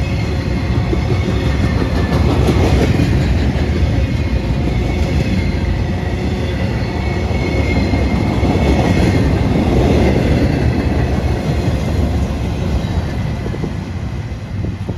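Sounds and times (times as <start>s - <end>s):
train wheels rumbling and clattering: 0.0s - 14.9s.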